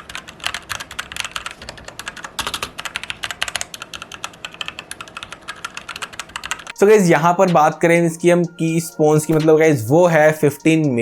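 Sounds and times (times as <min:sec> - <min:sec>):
fast mechanical keyboard typing: 0:00.0 - 0:06.8.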